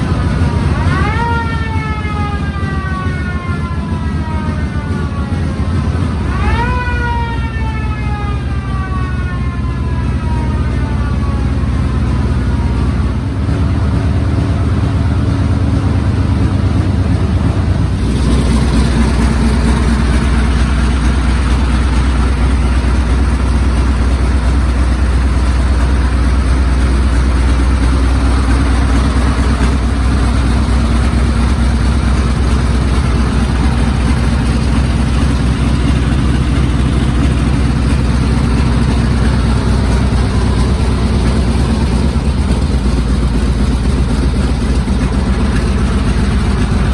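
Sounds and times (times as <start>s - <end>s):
tank engine running: 0.0s - 46.9s.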